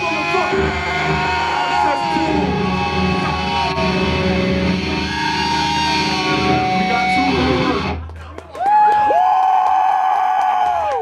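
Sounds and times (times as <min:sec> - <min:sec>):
distorted electric guitar: 0:00.0 - 0:08.1
hardcore band playing loud: 0:00.0 - 0:08.1.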